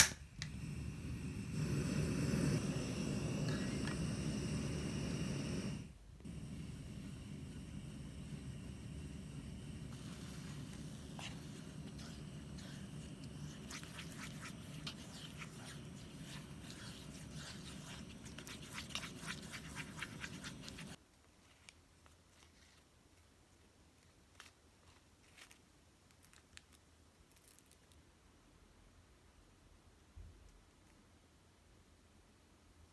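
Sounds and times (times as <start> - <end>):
hands clicking craft materials: 0.0 - 0.6
steady low hum: 0.0 - 21.0.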